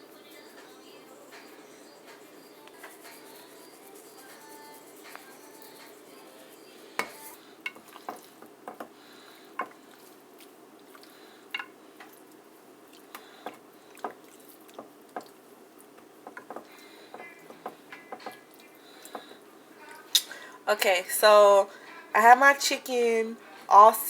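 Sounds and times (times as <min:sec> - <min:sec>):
kitchen clicks and knocks: 0:16.2 - 0:19.4.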